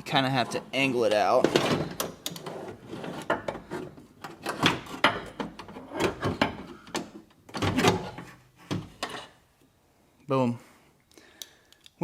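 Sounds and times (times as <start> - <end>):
metal clunks and scrapes: 1.4 - 9.4.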